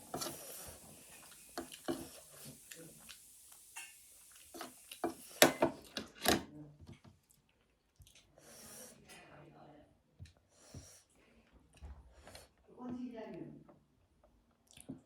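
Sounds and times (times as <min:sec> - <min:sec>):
person chewing noodles: 0:00.3 - 0:03.6, 0:04.2 - 0:05.9, 0:07.2 - 0:08.4, 0:14.5 - 0:15.0.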